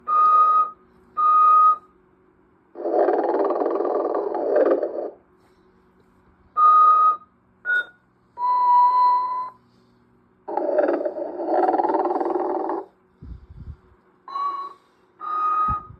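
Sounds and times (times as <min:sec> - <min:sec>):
whistling breaths: 0:00.0 - 0:02.0, 0:06.5 - 0:10.1, 0:12.2 - 0:15.9
faint hum: 0:00.0 - 0:15.9
toy snoring: 0:02.8 - 0:05.2, 0:10.5 - 0:13.0.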